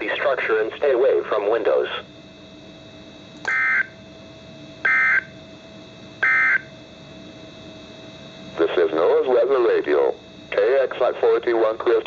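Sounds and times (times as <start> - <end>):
buzzy digital data tones: 6.2 - 6.8, 8.4 - 12.0.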